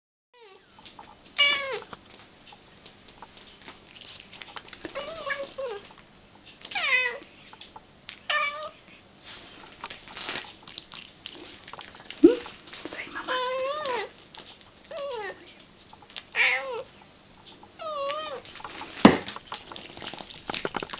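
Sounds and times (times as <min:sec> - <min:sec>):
cat meowing: 0:01.4 - 0:01.9, 0:04.9 - 0:05.8, 0:06.7 - 0:07.2, 0:08.3 - 0:08.8, 0:16.3 - 0:16.9, 0:17.8 - 0:18.4.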